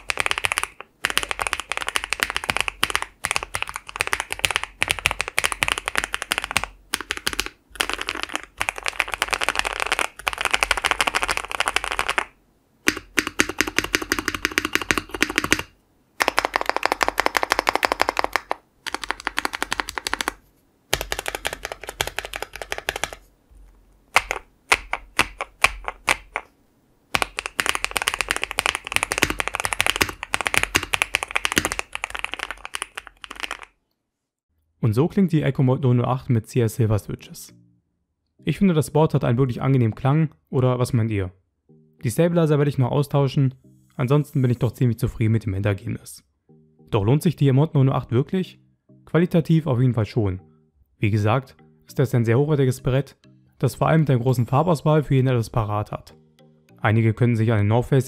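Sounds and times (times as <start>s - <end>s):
mechanical keyboard typing: 0.0s - 23.2s, 24.2s - 26.5s, 27.1s - 33.7s.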